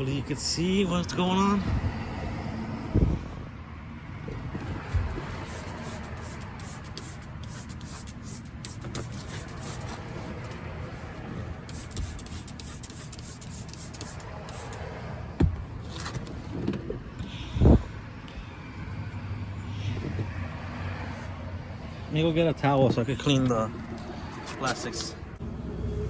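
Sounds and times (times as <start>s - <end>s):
scratchy scrubbing on carpet: 4.8s - 10.4s.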